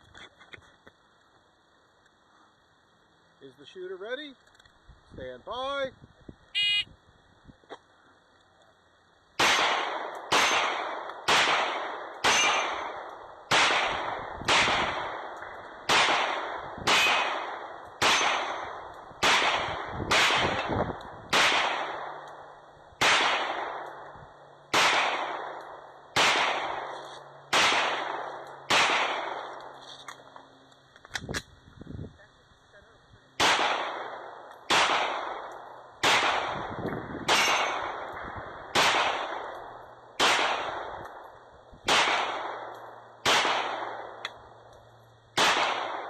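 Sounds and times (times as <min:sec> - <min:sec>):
gunshots echoing: 0:09.4 - 0:29.8, 0:33.4 - 0:44.6, 0:45.3 - 0:46.0.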